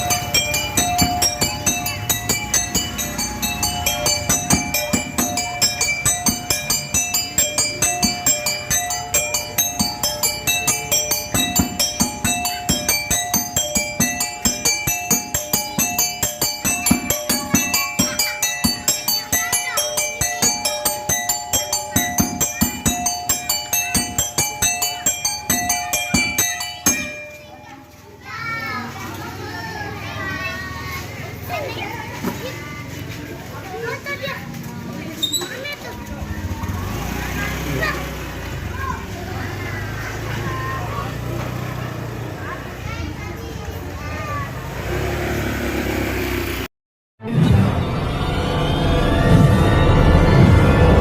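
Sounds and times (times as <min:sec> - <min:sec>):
fast percussive strokes: 0:00.0 - 0:27.7
bright metallic pitched notes: 0:00.0 - 0:28.0.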